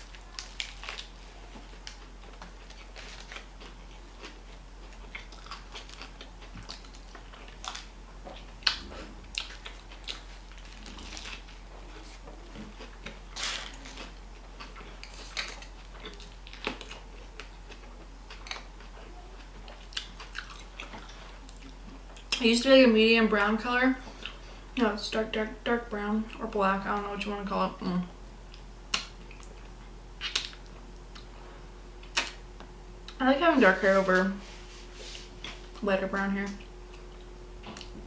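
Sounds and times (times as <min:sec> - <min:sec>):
person chewing food: 0:00.0 - 0:22.4, 0:24.1 - 0:24.4, 0:28.5 - 0:31.4, 0:34.9 - 0:35.8, 0:36.6 - 0:38.0.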